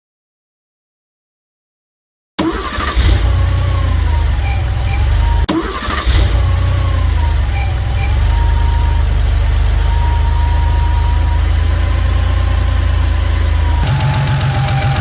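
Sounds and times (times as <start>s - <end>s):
car engine idling: 2.4s - 15.0s.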